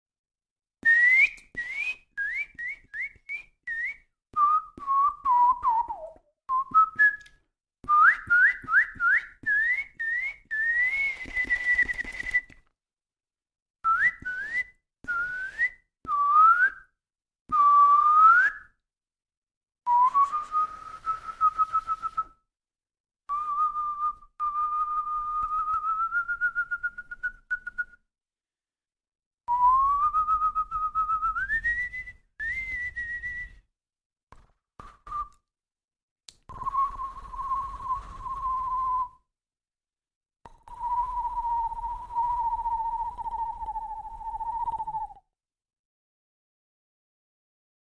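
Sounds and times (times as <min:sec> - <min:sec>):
person whistling: 0:00.8 - 0:12.6, 0:13.8 - 0:18.8, 0:19.9 - 0:22.4, 0:23.3 - 0:28.0, 0:29.5 - 0:33.7, 0:34.4 - 0:35.5, 0:36.5 - 0:39.3, 0:40.5 - 0:45.3.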